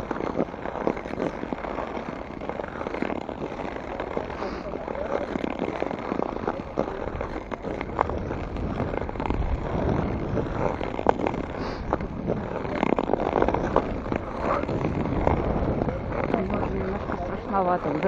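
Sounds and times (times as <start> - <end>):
ice skates scraping on ice: 0.0 - 18.0
wind buffeting microphone: 0.0 - 18.0.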